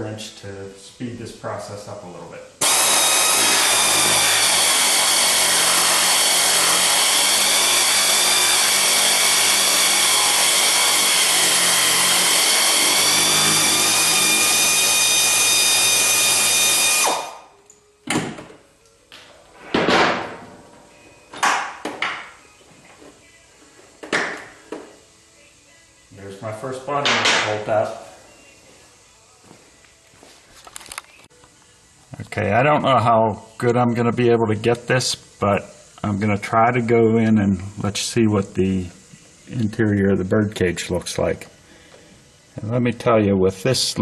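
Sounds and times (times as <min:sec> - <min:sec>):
pneumatic air wrench running: 0:02.6 - 0:17.5.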